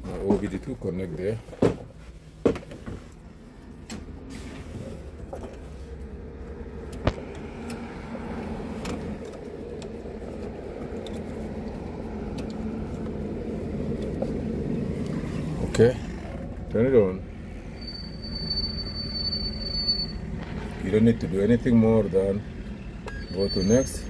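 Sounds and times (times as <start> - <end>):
low motor hum: 3.0 - 17.9.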